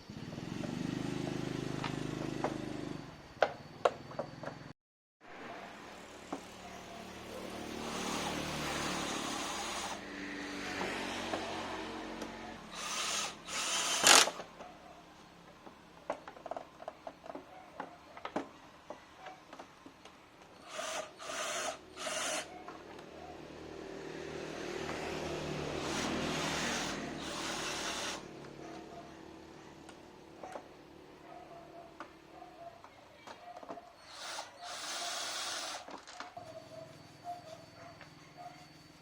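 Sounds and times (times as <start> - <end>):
small power tool running: 7.0 - 14.4, 20.6 - 22.6, 24.8 - 28.4, 34.0 - 36.0.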